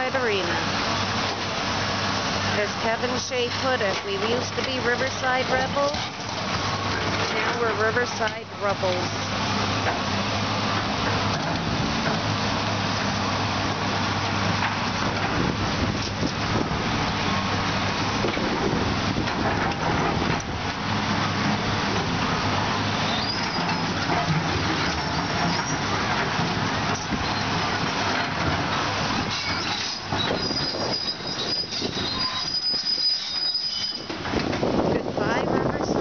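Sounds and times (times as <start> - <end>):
demolition machinery engine drone: 0.0 - 36.0
high-pitched metal squeals: 23.0 - 24.0, 29.3 - 34.1.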